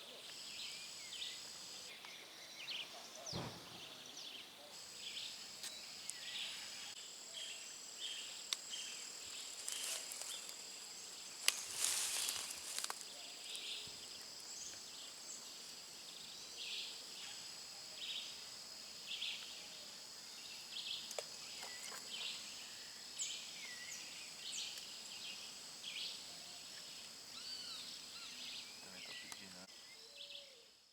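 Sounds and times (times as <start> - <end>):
bird calls: 0.0 - 4.8, 27.3 - 30.6
rustling: 9.4 - 10.6, 11.4 - 13.1.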